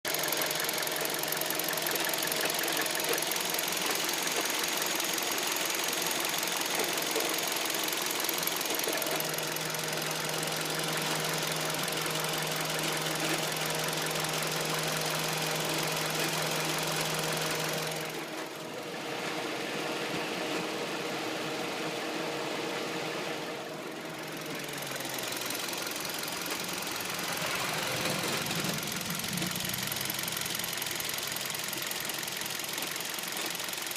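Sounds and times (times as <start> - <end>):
car engine running: 0.0 - 33.9
extraneous engine noise: 0.1 - 33.9.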